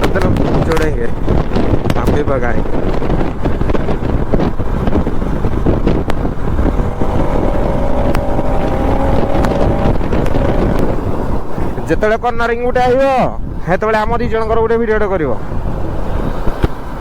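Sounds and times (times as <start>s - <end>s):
wind buffeting microphone: 0.0s - 17.0s
motorcycle engine running: 2.6s - 12.2s.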